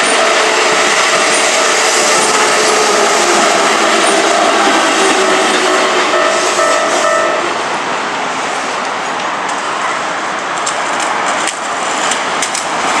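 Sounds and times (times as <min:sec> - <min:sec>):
level-crossing warning bell: 0:00.0 - 0:07.7
rushing noise of passing vehicles: 0:00.0 - 0:13.0.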